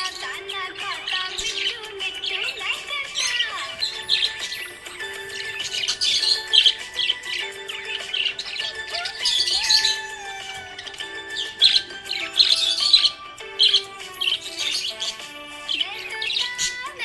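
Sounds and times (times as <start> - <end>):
background music: 0.0 - 17.0
budgerigar chirping: 0.0 - 17.0.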